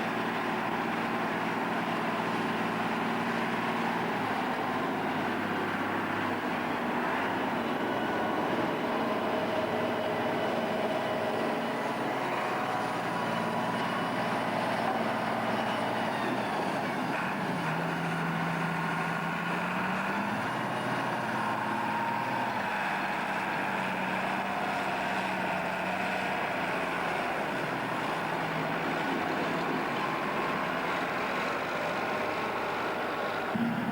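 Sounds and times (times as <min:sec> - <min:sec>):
diesel machinery engines under load: 0:00.0 - 0:33.9
high mechanical whine: 0:33.5 - 0:33.9.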